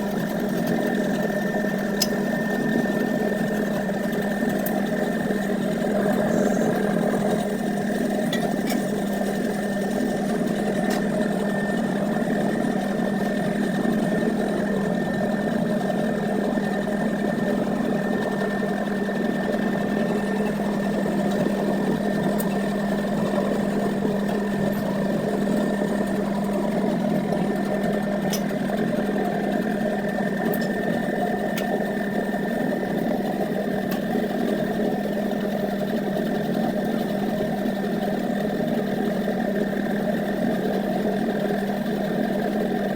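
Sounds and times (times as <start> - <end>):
motor hum: 0.0 - 42.9
high whine: 5.2 - 11.0.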